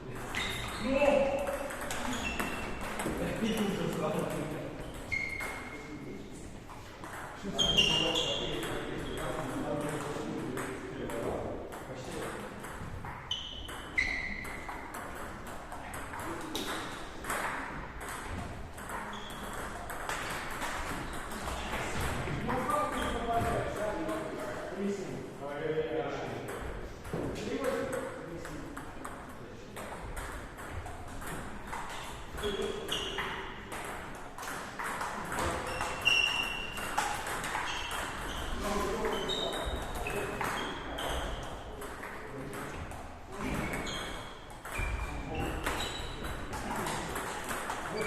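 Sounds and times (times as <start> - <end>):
table tennis ball knocking: 0.1 - 5.7, 8.6 - 24.2, 29.8 - 45.0
short high squeaks: 0.4 - 0.9, 1.9 - 2.9, 4.8 - 5.8, 7.6 - 9.2, 13.3 - 14.7, 19.0 - 19.6, 31.9 - 33.5, 35.6 - 41.5, 43.6 - 46.2.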